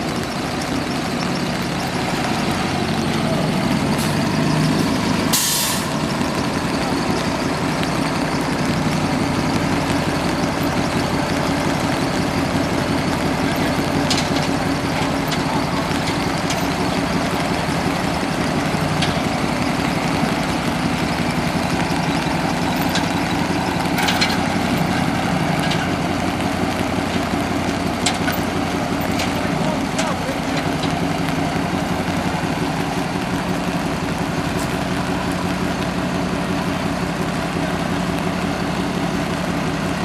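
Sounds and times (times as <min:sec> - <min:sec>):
vehicle engine running: 0:00.0 - 0:40.0.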